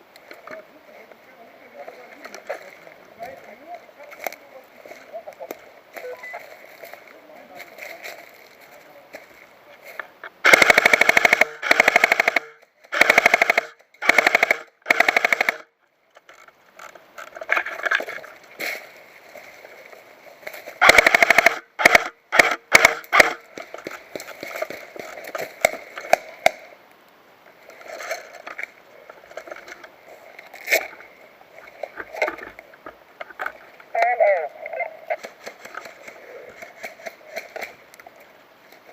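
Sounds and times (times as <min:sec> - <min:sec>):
airsoft gun firing bursts: 0:10.4 - 0:15.7, 0:20.8 - 0:23.4.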